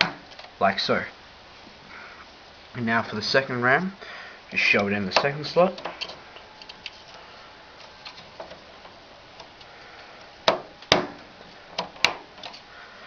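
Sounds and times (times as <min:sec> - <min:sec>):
memory slot clips clicking: 0:11.7 - 0:12.6.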